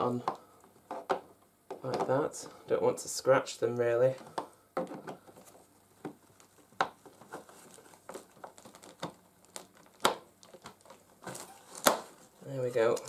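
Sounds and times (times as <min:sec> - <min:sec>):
plastic parts clicking and knocking: 0:00.2 - 0:02.2, 0:04.2 - 0:12.2.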